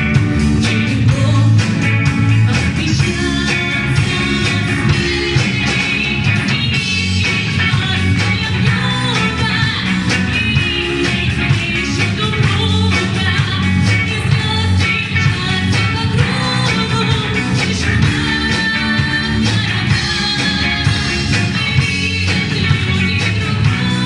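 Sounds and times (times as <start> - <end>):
rock guitar: 0.0 - 24.0
steady drumbeat: 0.0 - 24.0.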